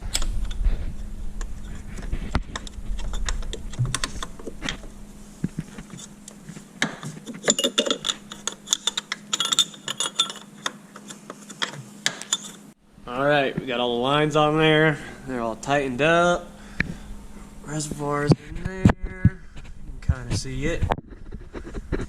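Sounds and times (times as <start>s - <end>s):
low rumble: 0.0s - 6.5s
wrenches clinking on fittings: 7.3s - 12.6s.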